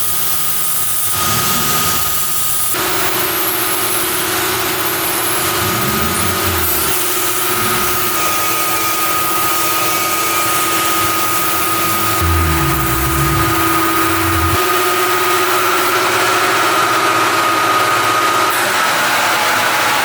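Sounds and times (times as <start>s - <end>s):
lathe motor whine: 11.4s - 14.6s.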